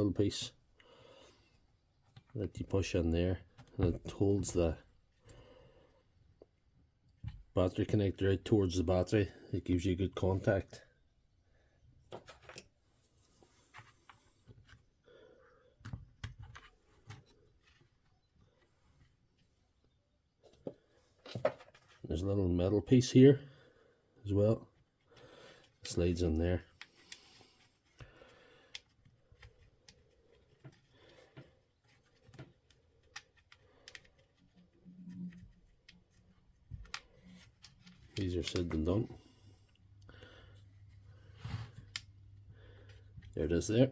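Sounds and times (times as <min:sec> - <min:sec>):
faint clicks of plastic parts: 0:03.4 - 0:07.5, 0:12.0 - 0:12.8, 0:13.4 - 0:15.0, 0:15.6 - 0:19.6, 0:24.6 - 0:43.4
small parts clicking and knocking: 0:26.8 - 0:34.8, 0:35.7 - 0:38.9.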